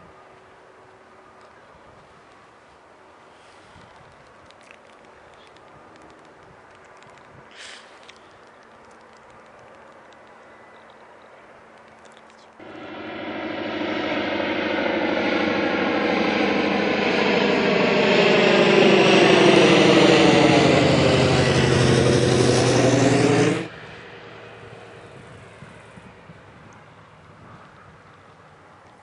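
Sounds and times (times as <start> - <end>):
propeller aircraft passing: 12.6 - 28.9.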